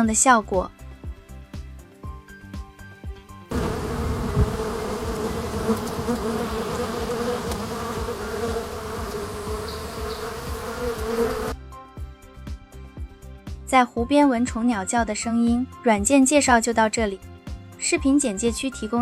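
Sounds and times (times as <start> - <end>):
insects buzzing: 3.5 - 11.6.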